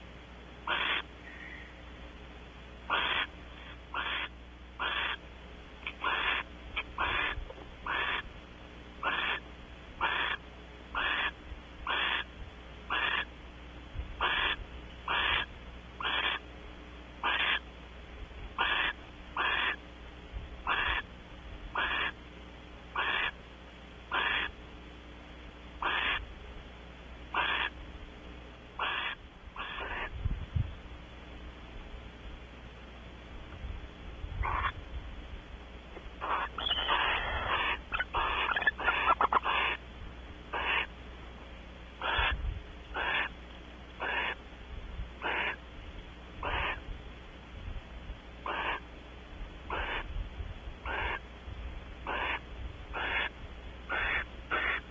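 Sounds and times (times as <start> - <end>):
barn owl hissing calls: 0.6 - 1.8, 2.9 - 8.3, 9.0 - 13.4, 14.2 - 16.5, 17.2 - 17.7, 18.6 - 19.8, 20.6 - 21.1, 21.7 - 22.2, 22.9 - 23.4, 24.1 - 24.6, 25.8 - 26.3, 27.3 - 27.8, 28.8 - 30.2, 34.4 - 34.8, 36.2 - 39.9, 40.5 - 41.0, 42.0 - 43.4, 44.0 - 44.5, 45.2 - 45.6, 46.4 - 46.9, 48.4 - 48.9, 49.7 - 50.2, 50.8 - 51.3, 52.0 - 54.9.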